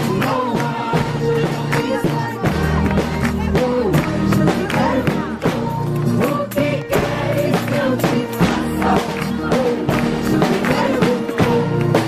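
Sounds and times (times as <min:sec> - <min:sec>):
gospel chorus singing: 0:00.0 - 0:12.0
instrumental accompaniment: 0:00.0 - 0:12.0
steady percussive beat: 0:00.0 - 0:12.0.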